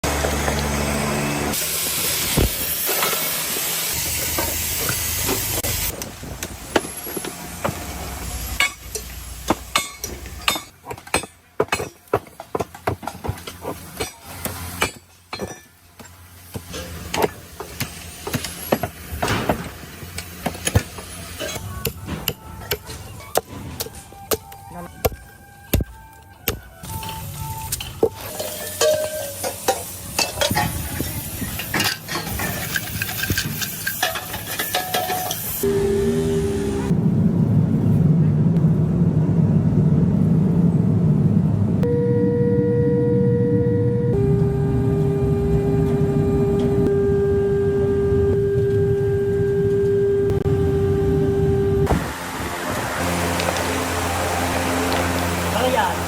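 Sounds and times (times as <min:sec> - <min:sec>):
machinery humming: 0:00.0 - 0:10.7, 0:16.1 - 0:56.0
metal clinks and clanks: 0:27.0 - 0:35.6
low rumble: 0:35.6 - 0:56.0.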